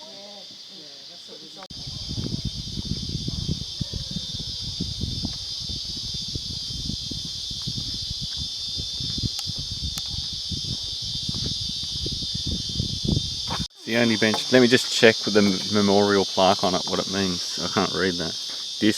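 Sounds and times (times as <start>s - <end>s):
shrill insect chorus: 0.0s - 18.9s
low rumbling and thuds: 1.7s - 13.7s.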